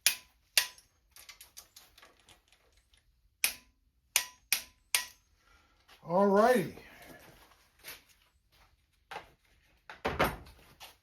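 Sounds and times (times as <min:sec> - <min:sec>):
metallic clicks of hand tools: 0:00.0 - 0:05.3.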